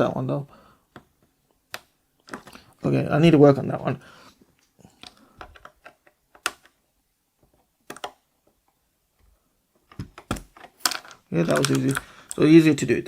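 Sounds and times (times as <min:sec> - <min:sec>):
plastic keyboard switch clicks: 0:07.9 - 0:08.2.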